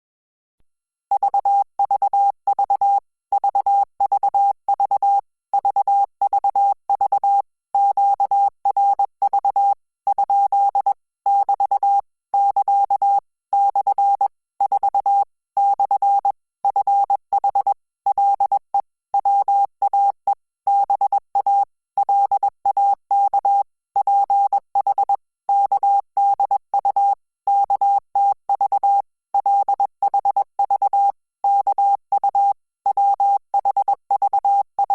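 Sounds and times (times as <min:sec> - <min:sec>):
morse code beeps: 0:19.2 - 0:34.9.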